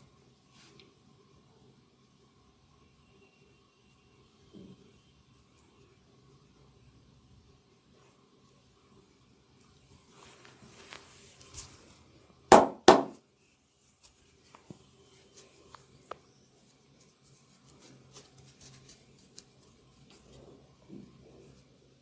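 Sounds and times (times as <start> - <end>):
soft rubbing: 13.4 - 22.0.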